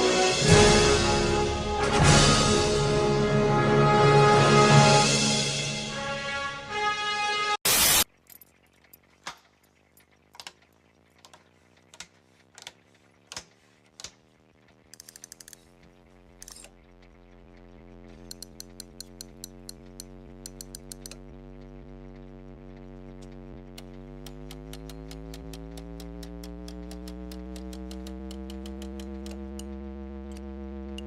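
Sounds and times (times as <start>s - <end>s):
low steady hum: 8.1s - 31.0s
mechanical clicks and ticks: 8.3s - 31.0s
quick regular ticks: 8.8s - 31.0s.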